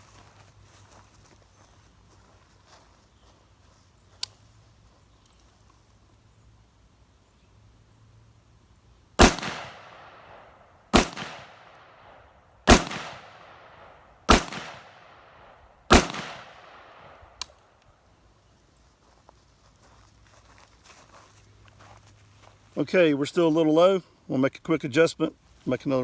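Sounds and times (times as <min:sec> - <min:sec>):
rifle shots echoing: 0:09.2 - 0:17.4.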